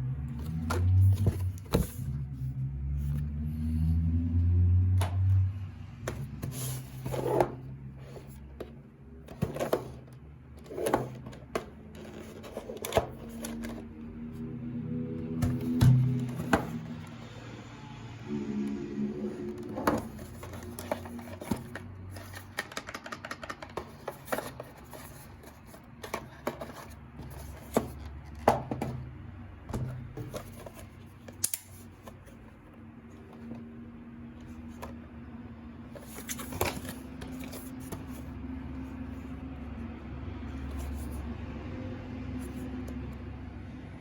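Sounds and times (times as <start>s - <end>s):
plastic keyboard clicks and taps: 21.6s - 24.4s.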